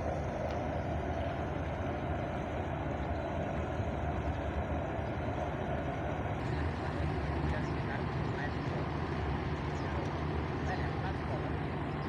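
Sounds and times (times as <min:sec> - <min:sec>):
ship engine rumble: 0:00.0 - 0:12.0.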